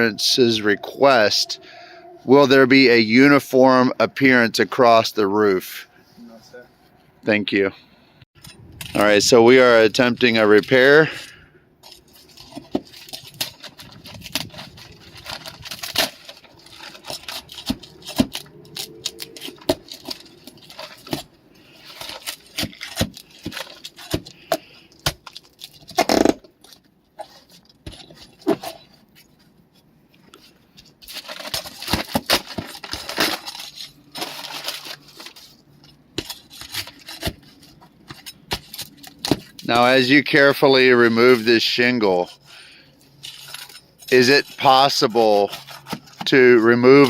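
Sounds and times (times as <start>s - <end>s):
hand tools clicking and scraping: 10.0s - 47.0s.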